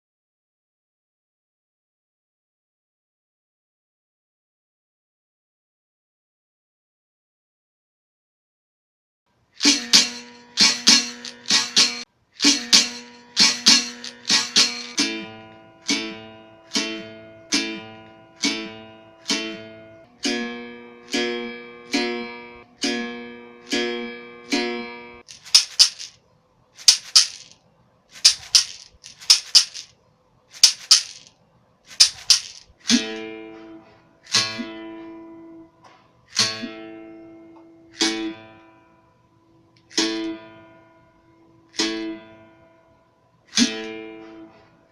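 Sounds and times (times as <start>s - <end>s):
shaker rattle: 9.6s - 15.0s, 25.3s - 26.2s, 26.8s - 33.2s.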